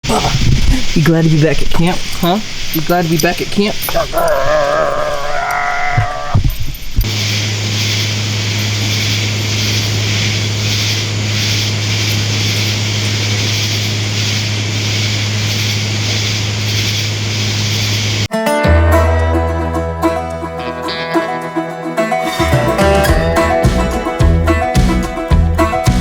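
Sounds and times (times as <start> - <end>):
constant hiss: 0.0 - 18.3
low mechanical hum: 0.1 - 18.3
banjo music: 18.3 - 26.0.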